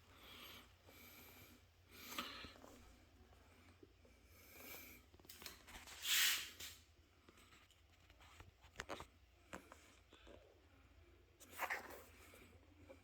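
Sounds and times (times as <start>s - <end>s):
short hiss: 6.0s - 6.8s.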